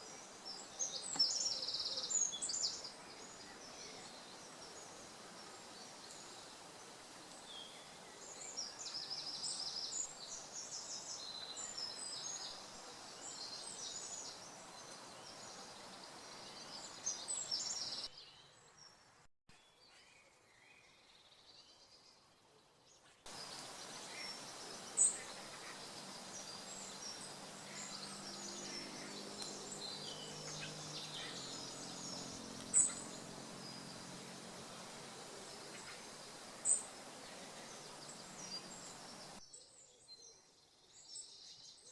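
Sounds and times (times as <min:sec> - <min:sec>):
birds singing and calling: 0:00.0 - 0:18.5, 0:23.3 - 0:41.9
steady outdoor hiss: 0:00.0 - 0:41.9.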